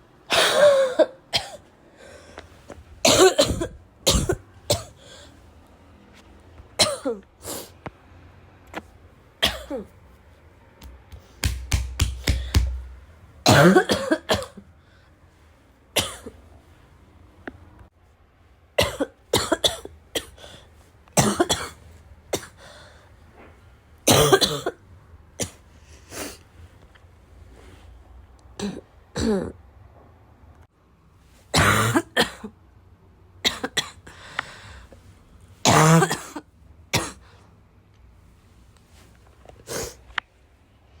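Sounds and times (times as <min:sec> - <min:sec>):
person coughing: 0:00.3 - 0:01.7, 0:03.0 - 0:05.0, 0:06.8 - 0:07.3, 0:09.4 - 0:09.9, 0:13.5 - 0:14.6, 0:16.0 - 0:16.3, 0:18.8 - 0:20.4, 0:21.2 - 0:21.8, 0:24.1 - 0:24.8, 0:28.6 - 0:29.6, 0:31.6 - 0:32.5, 0:35.7 - 0:36.4.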